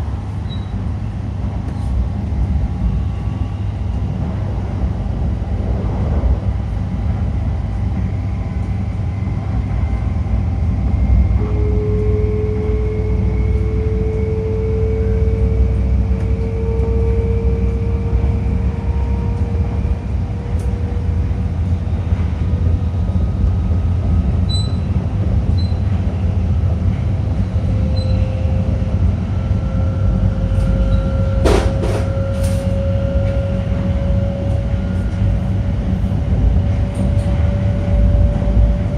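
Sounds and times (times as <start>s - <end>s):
train running rumble: 0.0s - 38.9s
train motor whine: 11.2s - 21.3s, 27.6s - 38.9s.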